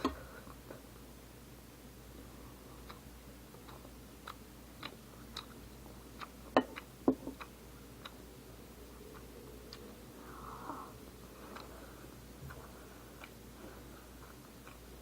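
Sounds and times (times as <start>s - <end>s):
wet chewing clicks: 2.8s - 8.3s, 14.2s - 15.0s.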